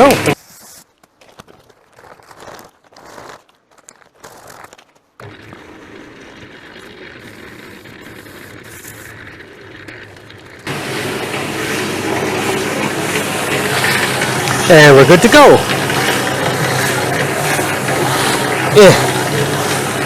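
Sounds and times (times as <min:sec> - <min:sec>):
concrete mixer churning: 0:00.0 - 0:00.4, 0:01.5 - 0:20.0
scraping and crunching: 0:00.0 - 0:14.8.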